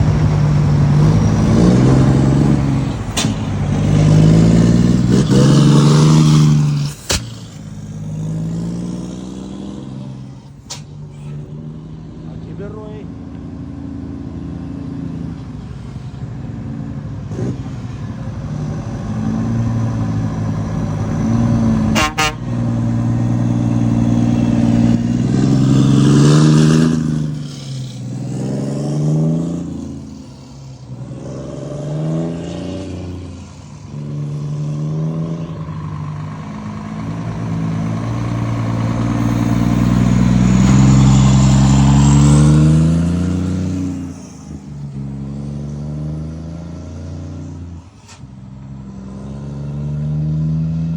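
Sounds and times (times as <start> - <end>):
truck engines accelerating: 0.0 - 50.9
sharp crack: 3.0 - 4.0, 6.2 - 8.0, 10.6 - 11.4.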